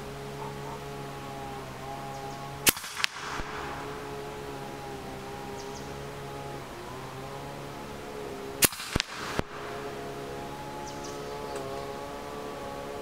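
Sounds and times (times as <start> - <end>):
low hum: 0.0 - 13.0
air rifle shot: 2.6 - 4.7, 8.6 - 9.9
fainter crack: 2.6 - 11.8.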